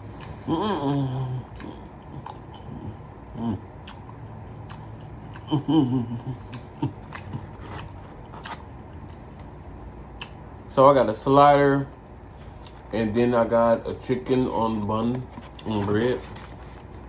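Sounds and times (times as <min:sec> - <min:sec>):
chewing and crunching: 0:00.0 - 0:10.7, 0:11.8 - 0:17.0
person murmuring: 0:00.3 - 0:03.7, 0:05.4 - 0:07.6
food handling clicks and rustles: 0:06.5 - 0:09.6, 0:11.9 - 0:17.0.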